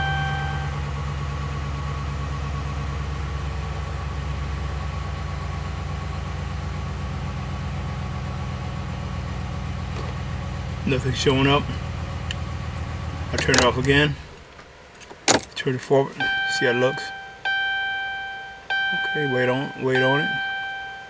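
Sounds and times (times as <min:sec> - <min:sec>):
dashboard chime: 0:00.0 - 0:00.8, 0:16.2 - 0:21.0
truck engine idling: 0:00.0 - 0:21.0.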